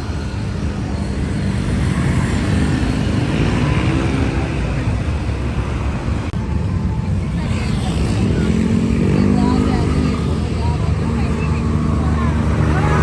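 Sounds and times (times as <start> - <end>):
road traffic passing: 0.0 - 13.0.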